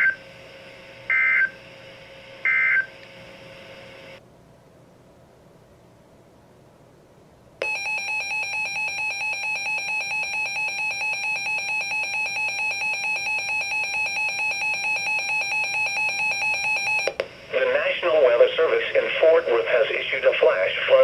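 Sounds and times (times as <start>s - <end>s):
two-tone alarm: 7.6s - 17.2s.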